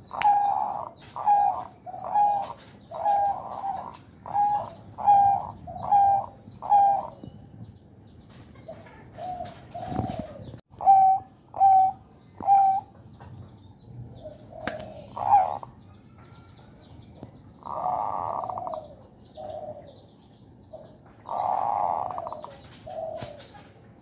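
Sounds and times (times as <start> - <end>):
dove harsh rasping calls: 0.0 - 7.3, 9.1 - 12.9, 14.2 - 15.8, 17.6 - 19.9, 20.7 - 23.5
dove cooing: 0.0 - 7.4, 8.7 - 12.9, 14.1 - 15.8, 17.6 - 20.0, 20.7 - 23.8
sharp click: 14.6 - 14.9.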